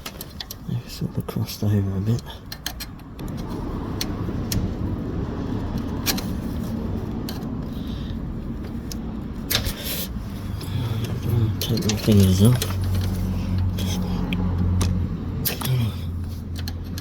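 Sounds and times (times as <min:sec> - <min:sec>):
steady low rumble: 0:00.4 - 0:17.0
metallic clicks and clinks: 0:10.6 - 0:14.0.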